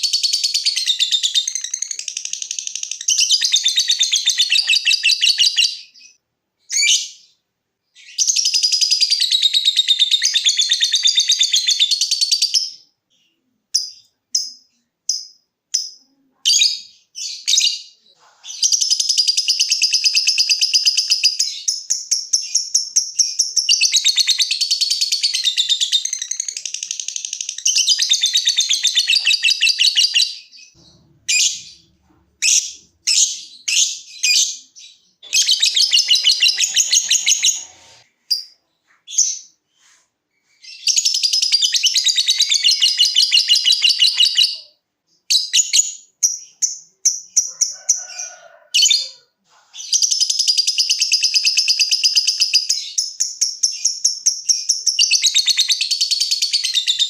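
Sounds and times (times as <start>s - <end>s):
lovebird chattering trills: 35.2s - 38.0s
lovebird short sharp chirps: 35.3s - 38.5s.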